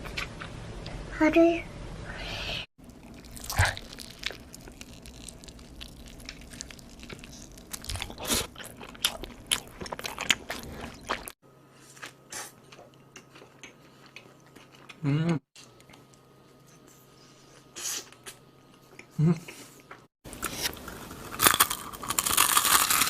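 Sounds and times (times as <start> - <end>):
chewing crunchy food: 2.8 - 11.4, 12.0 - 15.0, 17.6 - 23.0.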